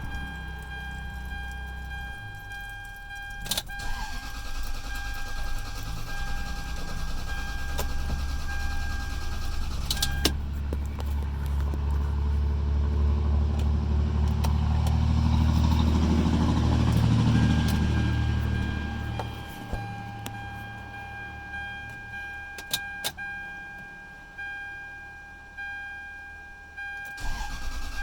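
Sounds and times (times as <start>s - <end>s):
starter motor cranking engine: 3.5s - 10.4s, 27.2s - 28.0s.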